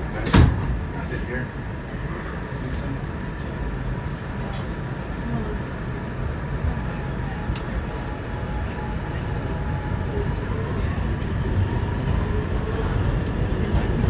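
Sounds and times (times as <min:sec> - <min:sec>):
subway wheels rumbling on rails: 0:00.0 - 0:14.0.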